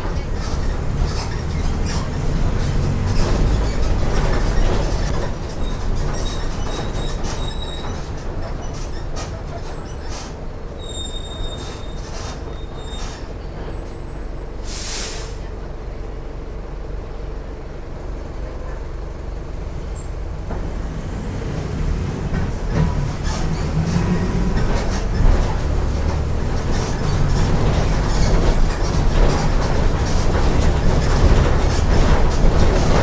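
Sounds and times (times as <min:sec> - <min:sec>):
bus body rattling and squeaking: 0:00.0 - 0:33.0
bus diesel engine humming: 0:00.0 - 0:33.0
air hiss: 0:14.6 - 0:15.5.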